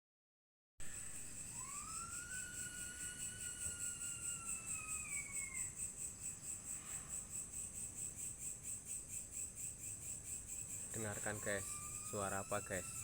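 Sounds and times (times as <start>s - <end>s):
insect pulsing trill: 0.8s - 13.0s
distant siren: 1.1s - 5.8s, 10.9s - 13.0s.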